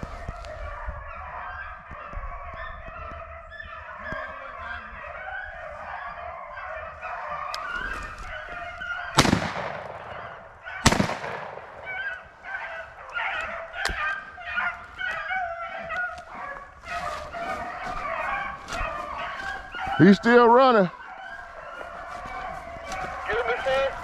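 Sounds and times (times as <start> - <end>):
dogs baying: 0.0 - 24.0
loud shotgun shots: 9.1 - 12.2.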